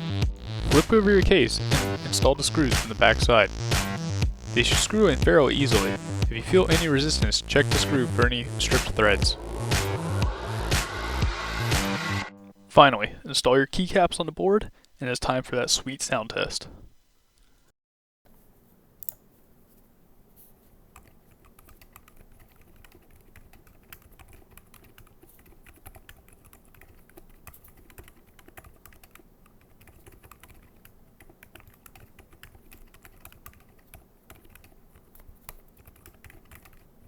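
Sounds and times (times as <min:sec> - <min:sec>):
muted keyboard keystrokes: 0:21.0 - 0:36.9.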